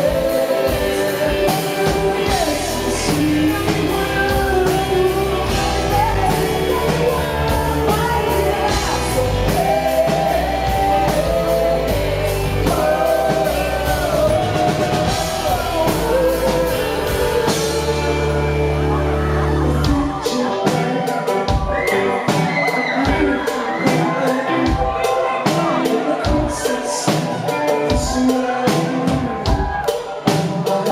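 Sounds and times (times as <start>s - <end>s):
live pop-rock band: 0.0s - 30.9s
person singing: 0.0s - 30.9s.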